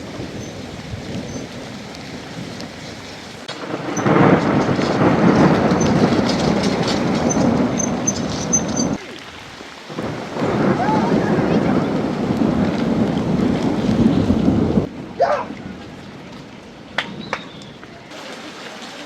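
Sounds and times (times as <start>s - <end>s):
heavy rain: 0.0s - 19.0s
loud rumbling rush: 10.0s - 16.0s.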